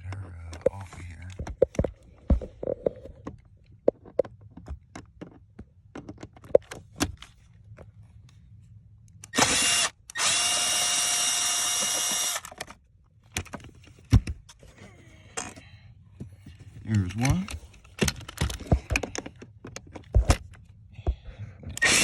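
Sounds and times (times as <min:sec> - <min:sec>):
tool handling clicks and knocks: 0:00.5 - 0:07.8, 0:16.2 - 0:21.9
power drill whining: 0:09.4 - 0:12.6, 0:21.8 - 0:22.0.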